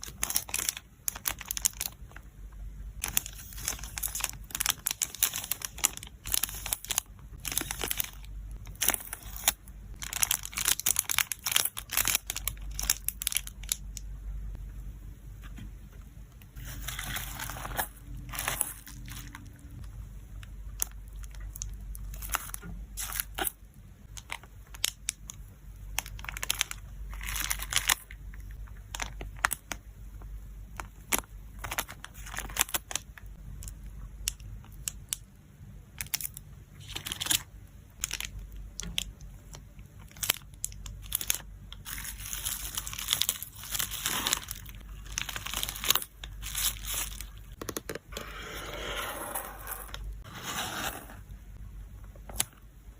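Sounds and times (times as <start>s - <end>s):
plastic packaging crinkling: 0.0s - 2.3s, 3.0s - 14.0s, 16.5s - 29.9s, 30.7s - 33.7s, 36.0s - 47.7s.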